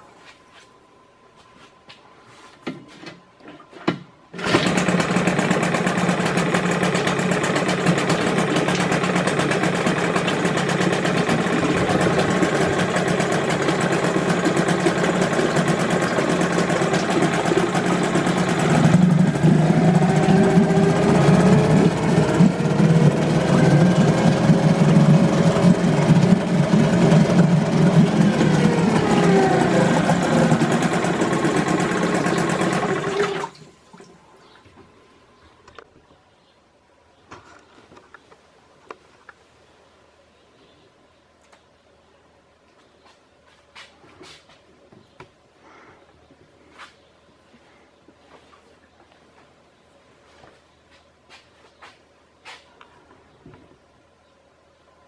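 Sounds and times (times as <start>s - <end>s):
outboard motor running: 4.4s - 33.5s.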